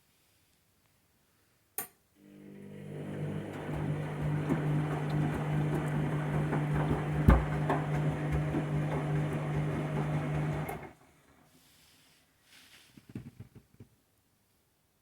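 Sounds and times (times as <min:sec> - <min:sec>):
washing machine motor hum: 0:02.2 - 0:11.4
drum clattering: 0:03.6 - 0:10.8.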